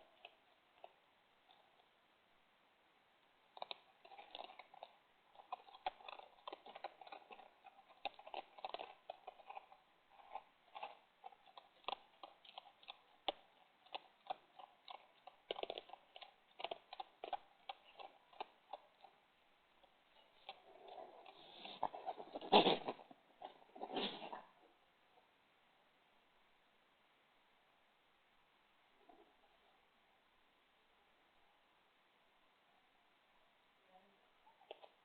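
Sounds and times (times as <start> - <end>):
animals crunching food: 3.5 - 24.6.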